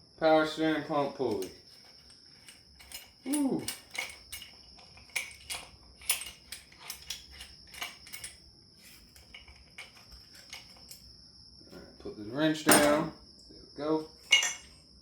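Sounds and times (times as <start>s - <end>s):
metal tools clinking: 1.2s - 11.1s, 12.6s - 13.2s, 14.2s - 14.9s.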